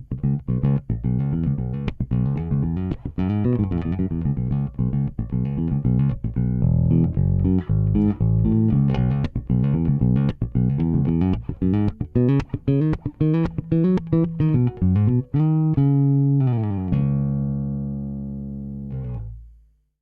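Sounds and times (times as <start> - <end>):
electric bass guitar notes: 0.0 - 19.6.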